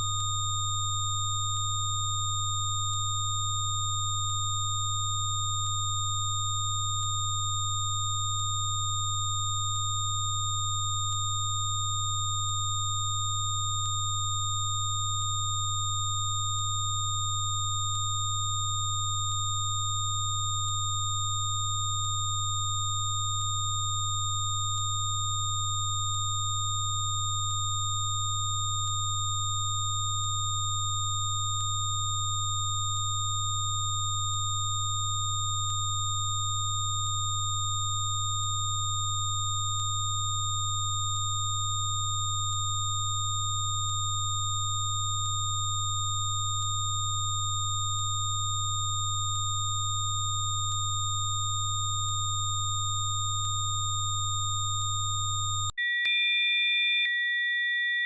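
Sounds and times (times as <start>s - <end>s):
loud low sine tone: 0.0s - 55.8s
faint high-pitched tones: 55.8s - 58.0s.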